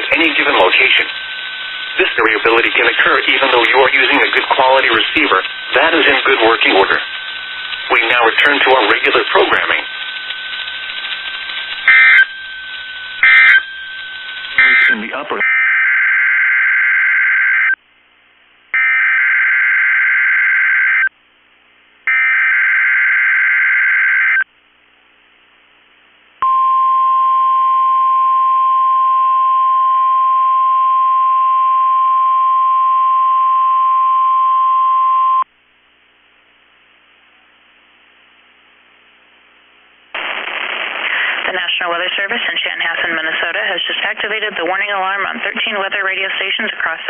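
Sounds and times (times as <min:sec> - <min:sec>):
faint radio hiss: 0:00.0 - 0:11.9, 0:14.3 - 0:15.4, 0:35.6 - 0:47.0
harsh digital data bursts: 0:00.0 - 0:15.7
steady warning alarm tone: 0:00.0 - 0:17.8, 0:18.8 - 0:21.1, 0:22.1 - 0:24.4.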